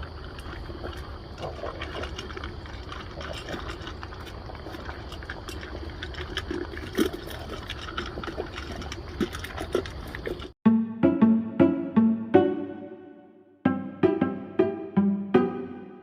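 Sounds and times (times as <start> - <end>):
dog chewing food: 0.0 - 10.6.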